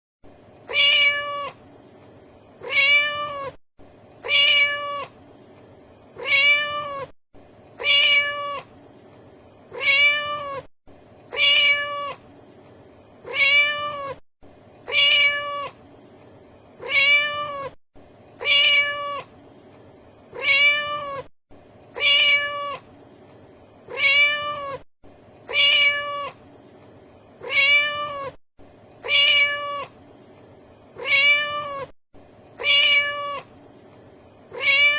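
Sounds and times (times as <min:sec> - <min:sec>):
cat meowing: 0:00.7 - 0:01.6, 0:02.6 - 0:03.6, 0:04.2 - 0:05.1, 0:06.2 - 0:07.2, 0:07.8 - 0:08.7, 0:09.7 - 0:10.7, 0:11.3 - 0:12.2, 0:13.2 - 0:14.2, 0:14.9 - 0:15.8, 0:16.8 - 0:17.8, 0:18.4 - 0:19.3, 0:20.3 - 0:21.3, 0:22.0 - 0:22.8, 0:23.9 - 0:24.9, 0:25.5 - 0:26.4, 0:27.4 - 0:28.4, 0:29.0 - 0:29.9, 0:31.0 - 0:32.0, 0:32.6 - 0:33.5, 0:34.5 - 0:34.9.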